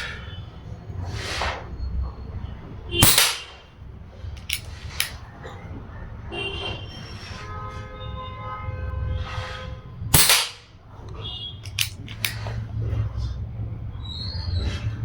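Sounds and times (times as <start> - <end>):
air rifle shot: 3.0 - 3.6, 10.2 - 10.7
quiet clicks: 11.1 - 12.4.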